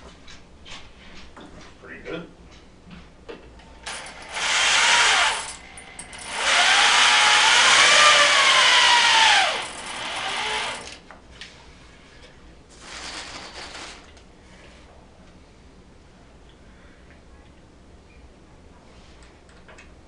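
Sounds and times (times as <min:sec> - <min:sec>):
power drill running: 0:03.8 - 0:11.0.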